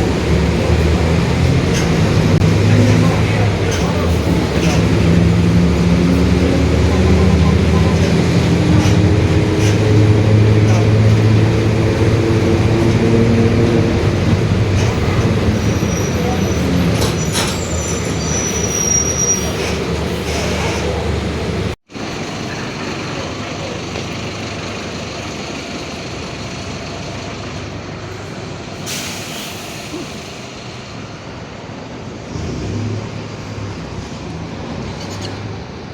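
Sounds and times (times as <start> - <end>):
bus engine rumble: 0.0 - 35.9
air hiss burst: 28.8 - 30.5.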